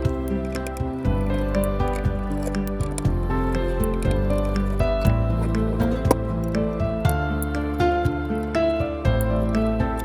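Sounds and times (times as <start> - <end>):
background music with beat: 0.0 - 10.0.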